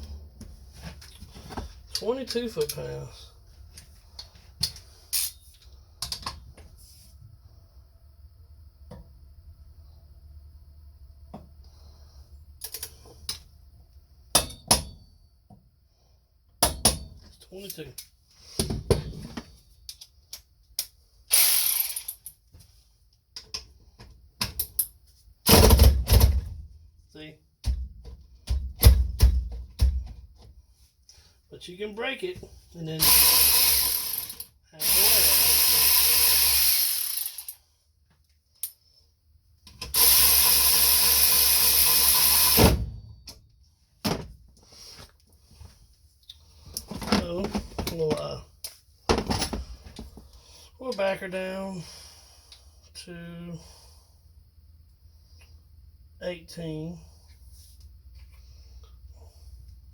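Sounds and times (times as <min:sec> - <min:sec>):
ratchet wrench clicking: 0:05.2 - 0:05.4, 0:19.9 - 0:22.4, 0:33.0 - 0:37.6, 0:39.8 - 0:42.6.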